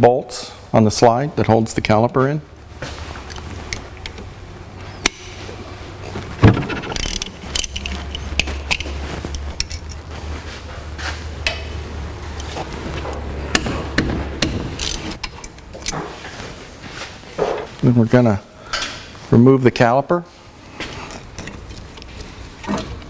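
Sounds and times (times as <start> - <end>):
metal tools clinking: 6.4 - 10.0, 14.8 - 15.6.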